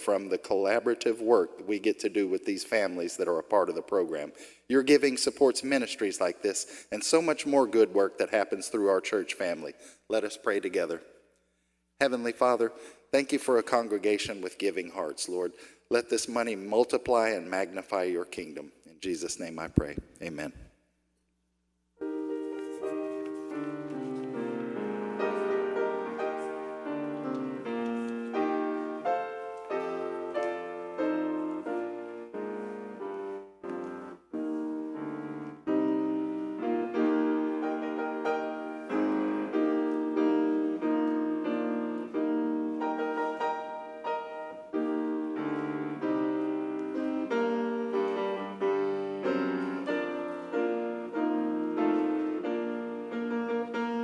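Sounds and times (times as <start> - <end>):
piano playing chords: 22.0 - 54.0.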